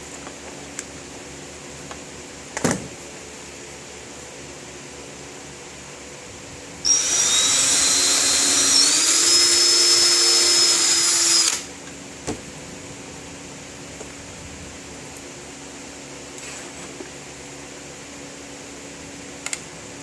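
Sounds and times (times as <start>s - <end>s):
power drill whining: 6.9s - 11.7s
click: 19.4s - 19.6s.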